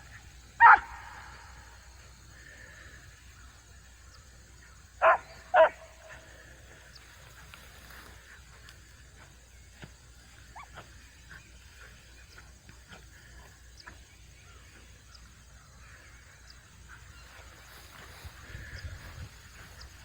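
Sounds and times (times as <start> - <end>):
dog barking: 0.6 - 1.4, 5.0 - 6.2.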